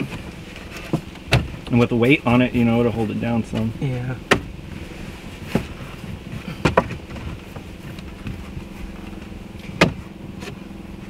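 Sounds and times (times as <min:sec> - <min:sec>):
steady low hum: 0:00.0 - 0:11.0
sharp wooden knocks: 0:06.6 - 0:07.2.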